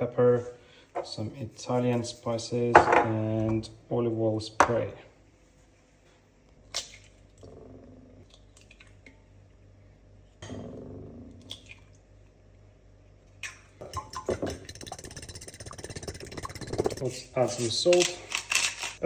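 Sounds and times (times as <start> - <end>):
eggs cracking: 13.4 - 19.0.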